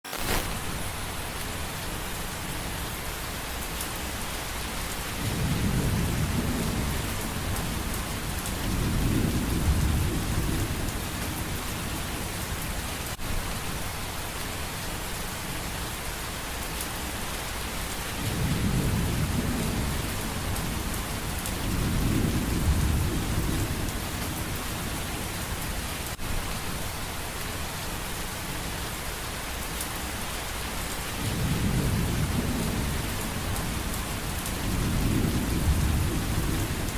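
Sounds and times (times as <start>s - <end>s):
steady rain hiss: 0.0s - 36.9s
thunder rumbles: 5.2s - 12.9s, 18.2s - 26.0s, 31.2s - 36.9s.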